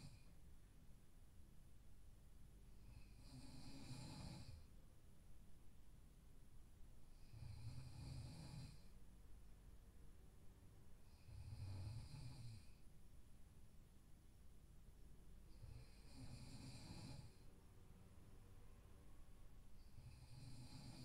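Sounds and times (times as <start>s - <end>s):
person snoring: 2.8s - 4.7s, 7.2s - 8.9s, 11.1s - 12.8s, 15.5s - 17.5s, 19.9s - 21.0s.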